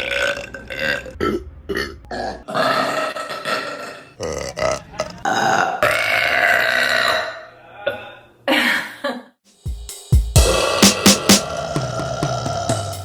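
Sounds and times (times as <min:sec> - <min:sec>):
electronic music with heavy beat: 0:09.6 - 0:13.0.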